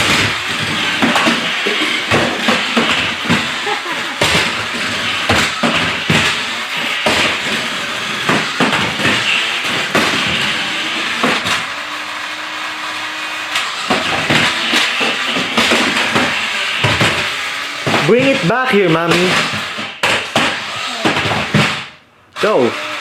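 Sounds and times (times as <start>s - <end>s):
plastic knocks and clatters: 0.0s - 11.7s, 13.9s - 18.4s
toy car electric motor whirring: 0.0s - 23.0s.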